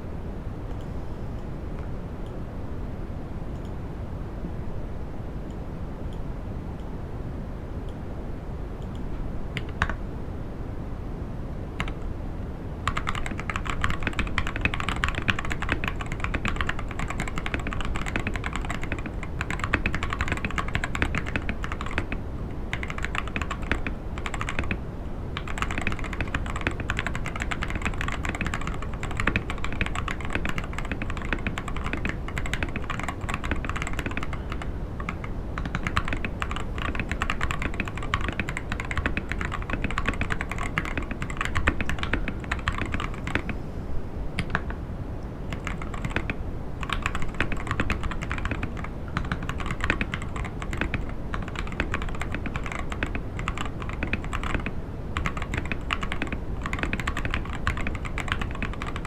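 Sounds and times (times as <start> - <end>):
mechanical keyboard typing: 11.8 - 12.0, 12.8 - 24.8, 25.4 - 43.6, 45.5 - 59.0.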